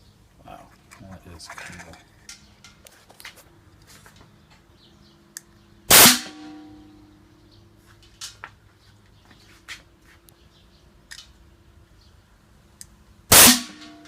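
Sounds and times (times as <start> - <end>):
air cannon blast: 5.9 - 6.5, 13.3 - 13.9
metallic ringing: 5.9 - 7.3, 13.4 - 14.0.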